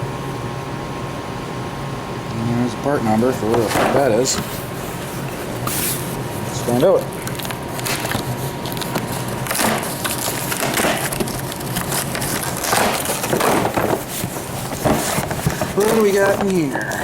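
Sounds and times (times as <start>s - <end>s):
cardboard and wrapping crinkling: 3.6s - 17.0s.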